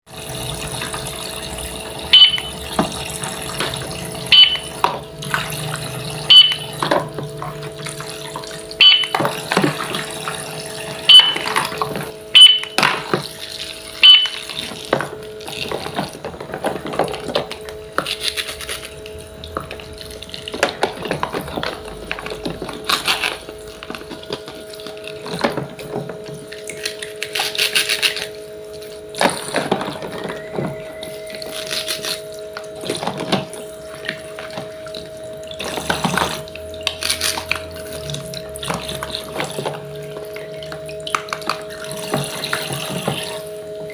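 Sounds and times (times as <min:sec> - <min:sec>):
steady hum: 0:00.2 - 0:15.7
ringing taps and knocks: 0:04.4 - 0:05.0, 0:08.8 - 0:09.3.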